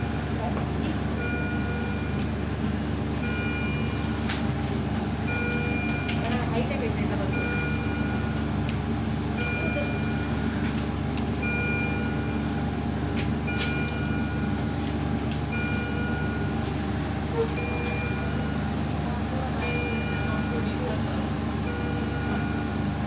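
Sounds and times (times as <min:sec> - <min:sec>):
low machine hum: 0:00.0 - 0:23.0
two-note alarm beep: 0:03.2 - 0:04.0, 0:09.4 - 0:10.5, 0:11.4 - 0:12.6, 0:13.5 - 0:14.6, 0:15.5 - 0:16.6, 0:17.4 - 0:18.7, 0:19.6 - 0:23.0.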